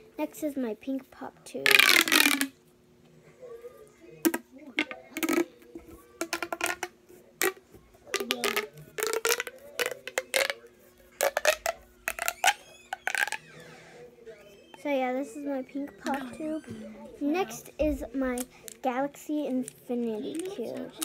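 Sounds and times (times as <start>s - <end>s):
plastic pop tube pops: 1.7s - 2.5s, 4.2s - 10.6s, 11.2s - 13.4s.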